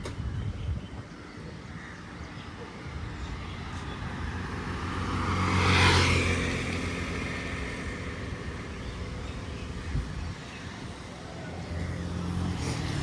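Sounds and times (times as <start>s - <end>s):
vehicle driving past: 3.6s - 9.8s.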